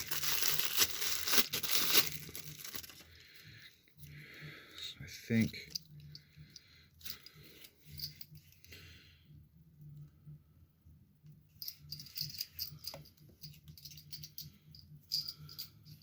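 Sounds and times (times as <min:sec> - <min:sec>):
packaging rustling: 0:00.0 - 0:03.2
small metal clinks and rattles: 0:00.0 - 0:04.1, 0:05.3 - 0:08.8, 0:11.5 - 0:16.0.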